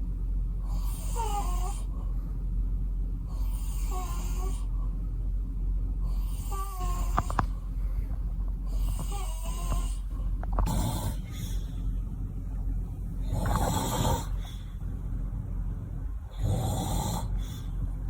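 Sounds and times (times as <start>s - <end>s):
man snoring: 0.6s - 2.0s, 3.3s - 4.7s, 6.1s - 7.5s, 8.7s - 11.6s, 13.2s - 14.6s, 16.3s - 17.6s.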